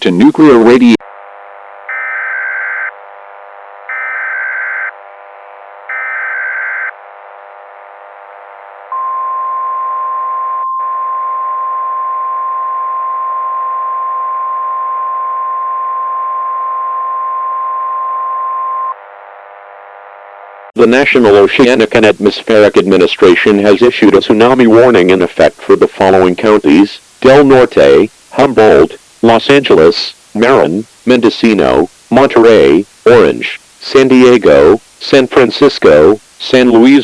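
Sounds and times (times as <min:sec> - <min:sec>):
steady alarm tone: 0:01.0 - 0:07.0, 0:08.9 - 0:19.2
digital data screech: 0:01.9 - 0:03.0, 0:03.9 - 0:04.9, 0:05.9 - 0:07.0.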